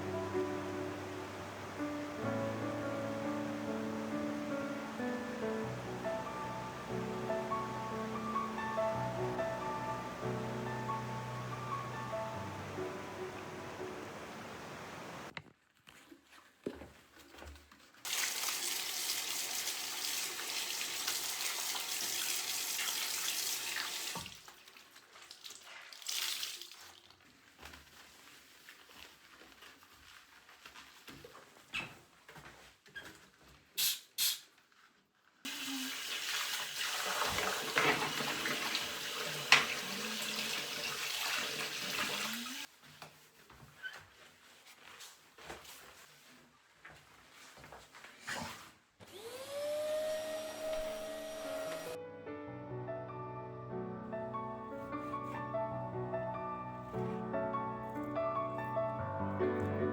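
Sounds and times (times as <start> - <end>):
tap water running into sink: 18.1 - 27.0, 35.5 - 42.7.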